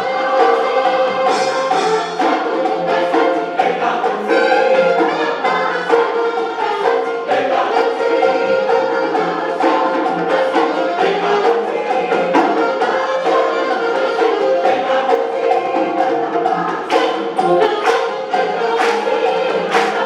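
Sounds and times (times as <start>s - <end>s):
choir singing in harmony: 0.0s - 20.0s
instrumental accompaniment: 0.0s - 20.0s.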